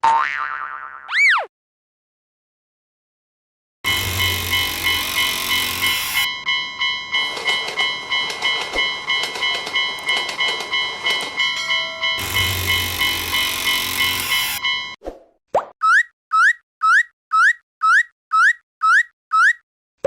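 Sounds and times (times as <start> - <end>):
railroad crossing bell ringing: 3.9 - 15.0.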